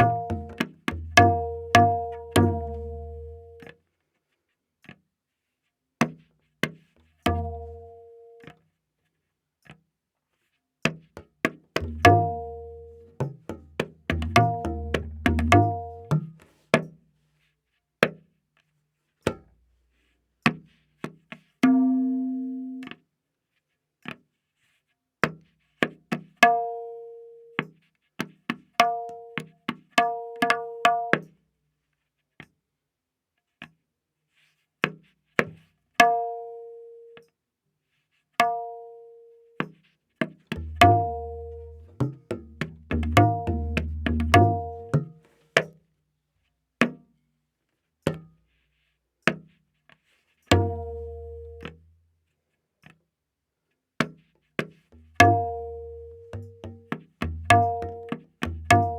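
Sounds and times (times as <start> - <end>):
tabla strokes: 0.0 - 3.8, 6.0 - 8.6, 10.8 - 23.0, 27.6 - 31.4, 34.3 - 36.5, 37.9 - 38.7, 39.6 - 45.8, 46.8 - 47.1, 47.8 - 51.9, 54.0 - 58.9.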